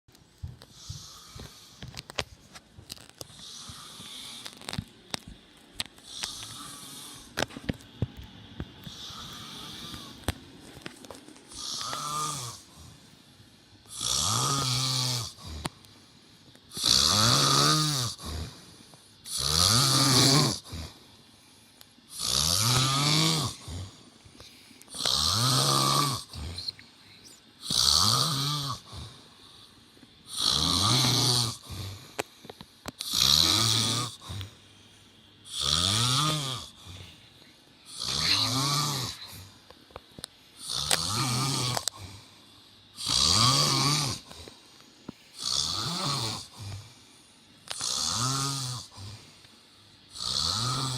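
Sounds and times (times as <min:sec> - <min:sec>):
man snoring: 0:03.3 - 0:04.8, 0:06.0 - 0:07.6, 0:08.8 - 0:10.3, 0:11.5 - 0:13.0, 0:13.8 - 0:15.8, 0:16.7 - 0:21.0, 0:22.1 - 0:24.0, 0:24.9 - 0:29.3, 0:30.3 - 0:32.2, 0:33.0 - 0:34.5, 0:35.5 - 0:37.2, 0:37.9 - 0:39.5, 0:40.6 - 0:42.3, 0:43.0 - 0:44.5, 0:45.3 - 0:47.0, 0:47.7 - 0:49.4, 0:50.1 - 0:50.9.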